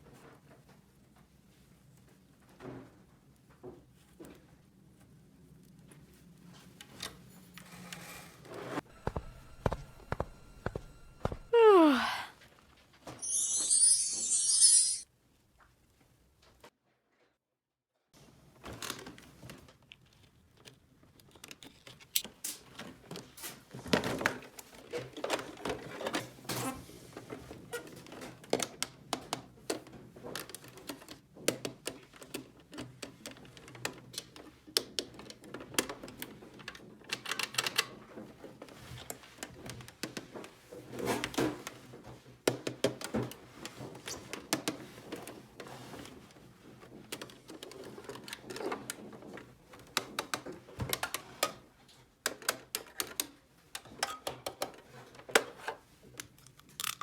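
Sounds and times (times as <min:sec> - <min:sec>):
plastic toy pieces clicking: 0:56.3 - 0:57.0.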